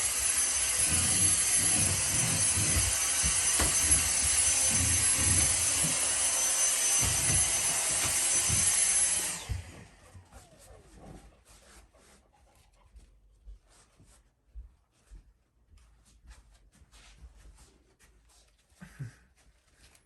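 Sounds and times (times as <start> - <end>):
vacuum cleaner whine: 0.0 - 11.1.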